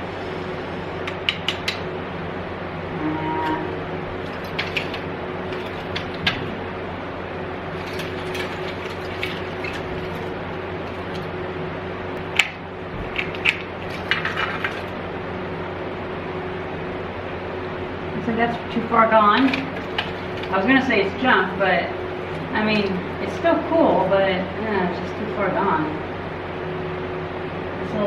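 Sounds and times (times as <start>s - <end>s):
background hum: 0.0s - 28.0s
metallic clicks and rattles: 4.2s - 6.5s, 7.8s - 11.3s, 19.3s - 20.7s.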